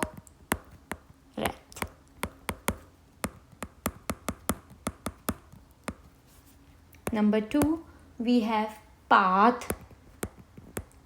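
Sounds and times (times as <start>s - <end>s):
sharp light taps and clicks: 0.0s - 6.1s, 9.6s - 11.0s.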